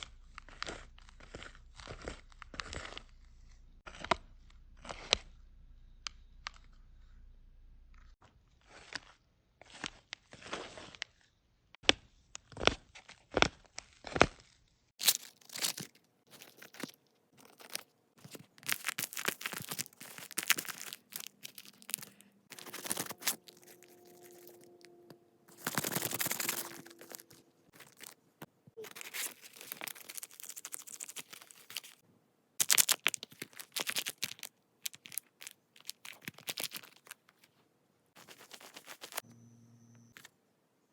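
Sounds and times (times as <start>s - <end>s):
tearing and crinkling handling noises: 12.3s - 24.9s, 25.5s - 32.0s, 32.6s - 37.6s, 38.2s - 39.2s.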